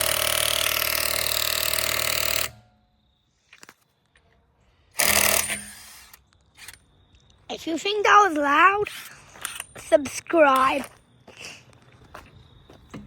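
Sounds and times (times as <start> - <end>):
small machine chattering: 0.0 - 2.6, 5.0 - 6.1.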